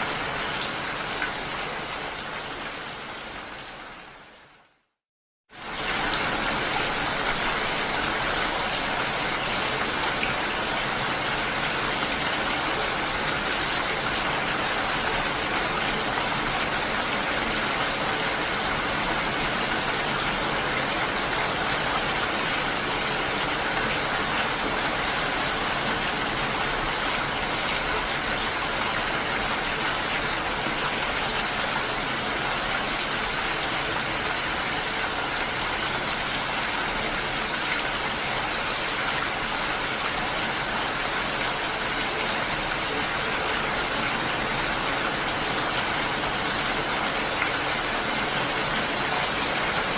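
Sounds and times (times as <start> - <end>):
heavy rain falling: 0.0 - 4.7, 5.5 - 49.9.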